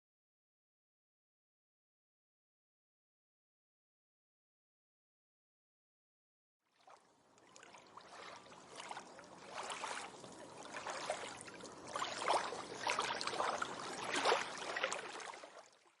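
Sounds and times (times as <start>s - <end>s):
water splashing and lapping: 6.7s - 16.0s.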